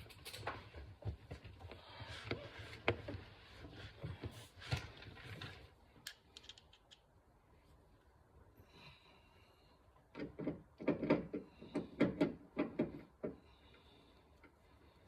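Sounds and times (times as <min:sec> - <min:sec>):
parts clicking and knocking: 0:06.0 - 0:07.1, 0:10.1 - 0:14.6.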